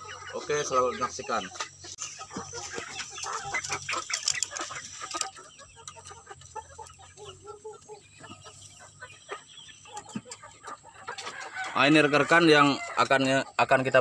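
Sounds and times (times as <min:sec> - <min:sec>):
chickens clucking: 0:00.0 - 0:14.0
scratchy clicking and rustling: 0:02.0 - 0:05.4.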